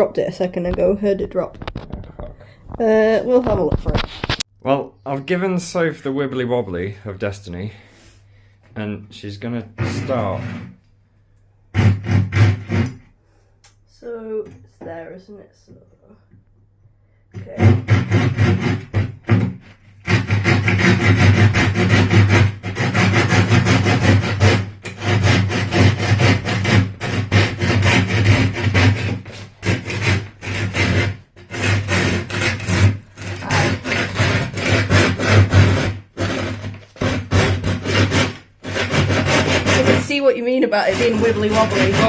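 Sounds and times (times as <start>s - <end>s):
saw cutting wood: 9.6s - 10.8s, 11.7s - 13.0s, 17.4s - 42.0s.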